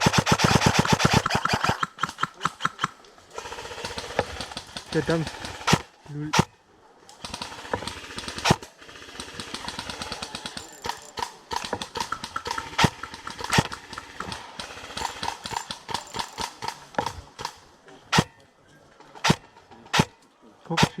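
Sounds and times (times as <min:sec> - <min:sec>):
airsoft guns full-auto clicking: 0:00.0 - 0:06.5, 0:07.1 - 0:17.6
airsoft gun single shots: 0:05.4 - 0:06.5, 0:16.2 - 0:18.4, 0:19.2 - 0:20.2, 0:20.8 - 0:21.0.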